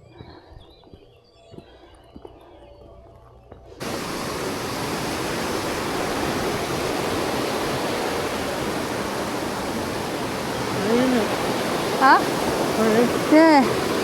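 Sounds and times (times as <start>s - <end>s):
bird chirps: 0.0s - 3.6s
rushing mountain water: 3.8s - 14.0s.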